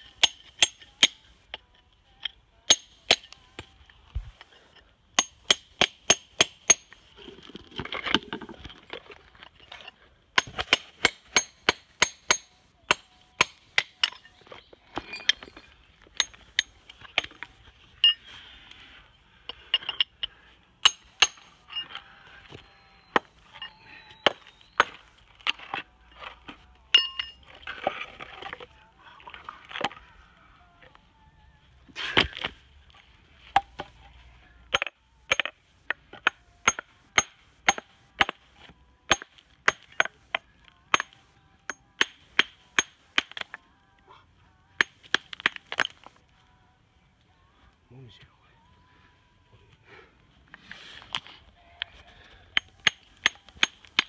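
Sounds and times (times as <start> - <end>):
hammer clinking on stone: 0.1 - 1.2, 2.7 - 3.4, 9.7 - 18.2, 19.5 - 21.9, 26.9 - 27.5, 39.1 - 43.6, 52.6 - 54.0
stone crumbling: 5.2 - 18.2, 44.8 - 46.1.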